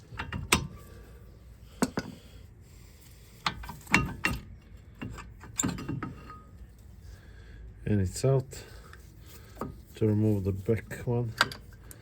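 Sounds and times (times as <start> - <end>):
sharp metallic clicks and knocks: 3.4 - 6.4.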